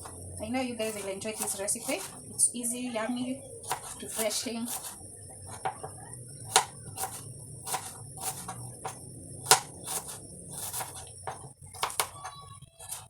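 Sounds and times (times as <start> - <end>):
knife chopping on board: 0.8 - 2.1, 3.7 - 13.0.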